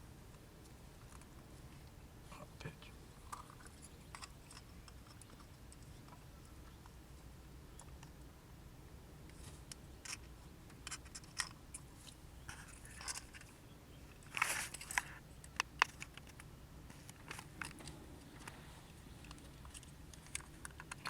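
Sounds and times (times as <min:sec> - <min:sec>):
light clicks and scrapes: 0:03.2 - 0:07.0, 0:09.3 - 0:21.0.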